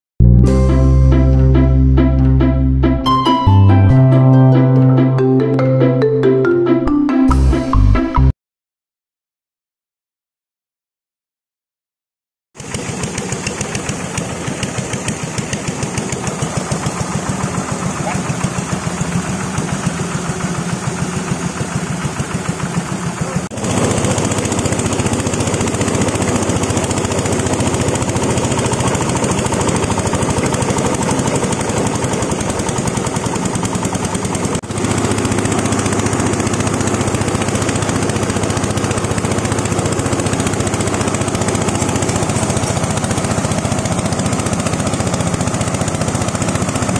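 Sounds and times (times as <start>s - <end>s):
grinding machine chattering: 12.6s - 46.9s.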